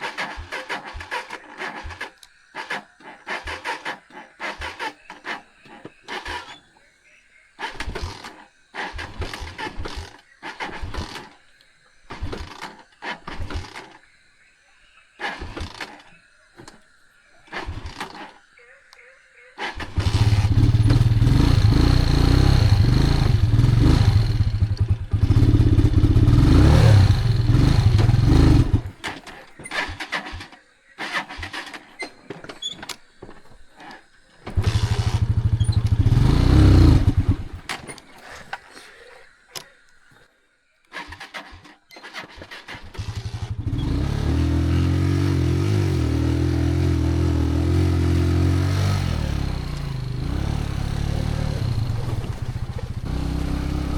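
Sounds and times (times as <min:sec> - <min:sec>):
engine running: 0:19.8 - 0:29.2, 0:34.4 - 0:37.8, 0:43.0 - 0:53.9.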